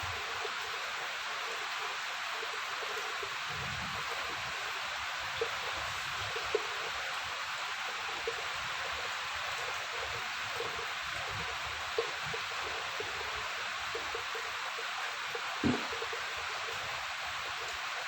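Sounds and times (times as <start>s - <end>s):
steady rain hiss: 0.0s - 18.0s
drops plopping: 15.6s - 16.0s.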